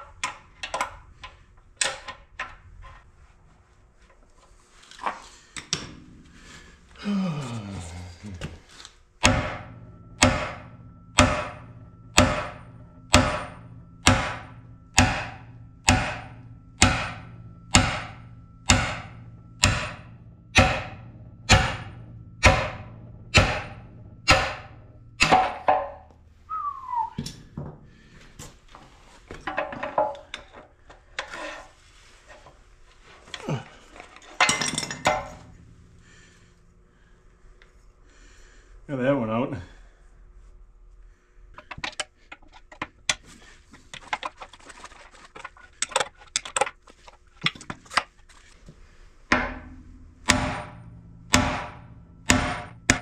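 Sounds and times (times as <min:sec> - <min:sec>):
hammer striking metal: 0:09.2 - 0:26.4, 0:34.4 - 0:36.6, 0:49.3 - 0:53.0
metal clatter: 0:09.2 - 0:26.4, 0:29.4 - 0:31.7, 0:33.2 - 0:36.6.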